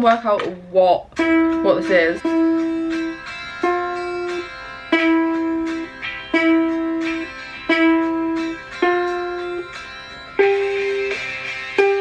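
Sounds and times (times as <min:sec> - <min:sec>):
plucked string melody: 0:00.0 - 0:12.0.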